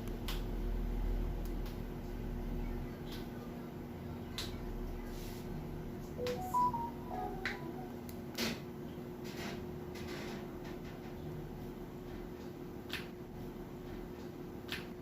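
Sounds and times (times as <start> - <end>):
electronic beeps: 6.2 - 7.9.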